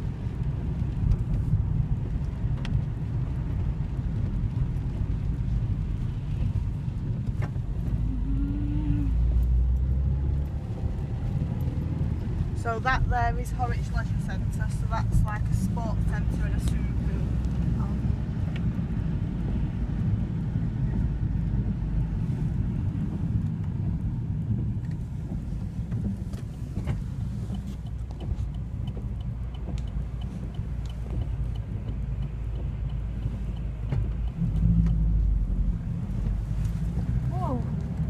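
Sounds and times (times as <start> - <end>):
car cabin road rumble: 0.0 - 38.0
faint regular ticking: 24.8 - 37.1.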